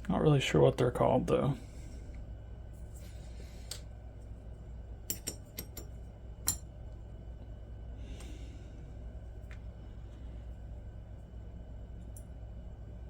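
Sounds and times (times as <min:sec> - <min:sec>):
low steady hum: 0:00.0 - 0:13.0
metal knife parts clicking: 0:05.1 - 0:06.6.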